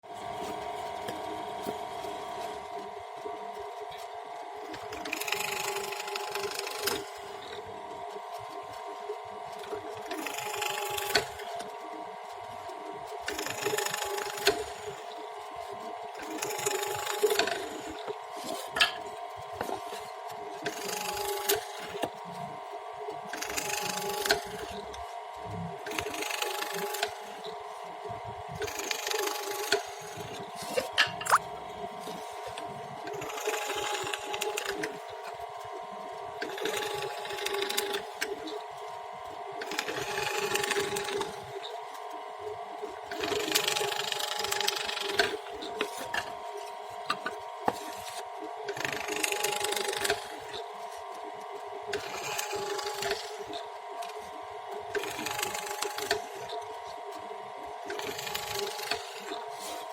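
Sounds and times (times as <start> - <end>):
steady machine hum: 0.0 - 59.9
electric power tool cutting wood: 13.2 - 15.2, 16.2 - 22.2, 25.9 - 27.9, 28.6 - 35.4, 36.4 - 38.6, 39.6 - 41.7, 43.1 - 50.7, 52.0 - 54.2, 55.0 - 56.6, 57.8 - 59.9.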